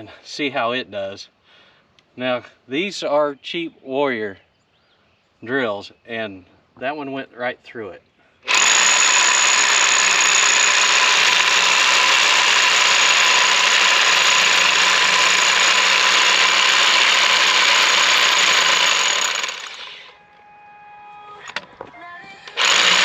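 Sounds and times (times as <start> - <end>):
hammer drill whining: 8.5 - 20.4, 21.3 - 23.0.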